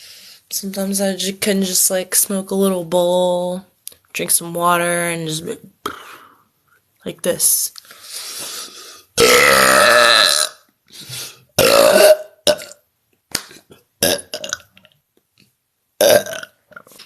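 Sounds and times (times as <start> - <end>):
woman burping loudly: 9.2 - 10.6, 11.6 - 12.8, 14.0 - 14.7, 16.0 - 16.8.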